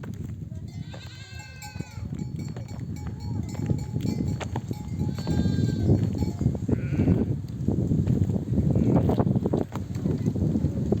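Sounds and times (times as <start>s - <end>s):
sheep bleating: 0.8s - 2.0s, 5.0s - 6.0s, 6.7s - 7.3s.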